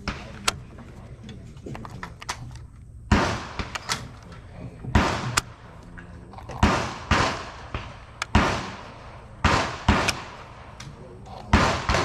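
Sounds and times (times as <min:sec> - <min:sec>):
gunshots with echoing tail: 0:03.1 - 0:04.2, 0:04.9 - 0:05.7, 0:06.6 - 0:12.0.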